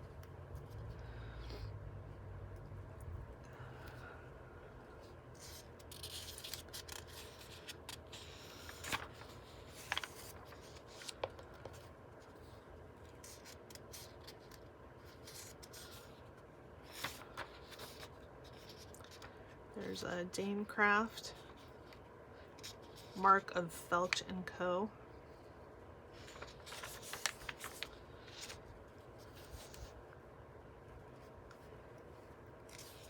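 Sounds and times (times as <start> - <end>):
low room hum: 0.0 - 33.0
book pages rustling: 4.9 - 20.2, 20.9 - 23.3, 26.1 - 30.2, 30.9 - 33.0.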